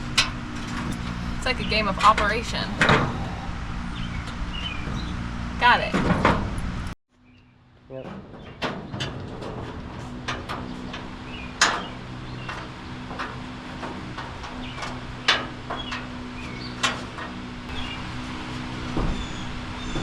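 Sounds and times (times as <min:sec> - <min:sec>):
steady low hum: 0:00.0 - 0:07.0.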